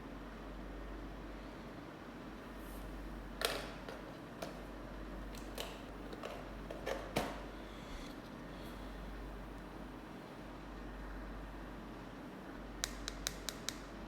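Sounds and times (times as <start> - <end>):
plastic packaging clicks and taps: 12.8 - 13.9.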